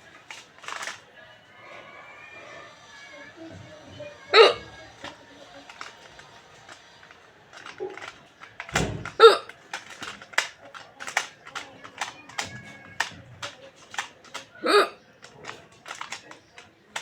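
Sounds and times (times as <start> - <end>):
faint clicks: 0.0 - 1.1, 4.7 - 17.0.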